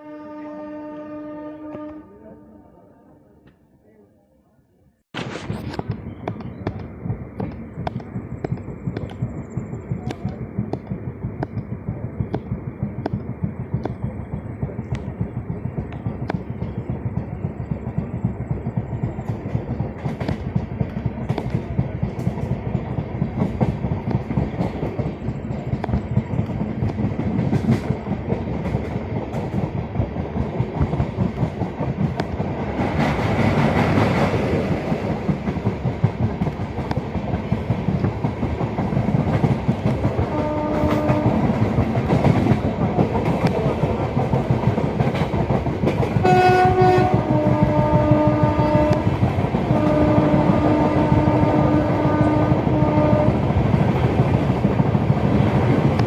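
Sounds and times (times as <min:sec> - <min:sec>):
locomotive horn: 0:00.0 - 0:03.2, 0:40.2 - 0:41.5, 0:46.2 - 0:49.1, 0:49.7 - 0:53.5
train wheels clattering over rail joints: 0:05.2 - 0:56.0.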